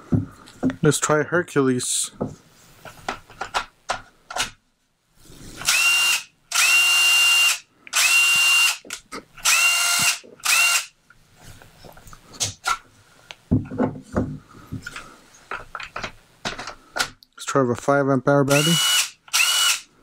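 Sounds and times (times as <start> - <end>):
power tool motor whine: 18.5 - 19.8.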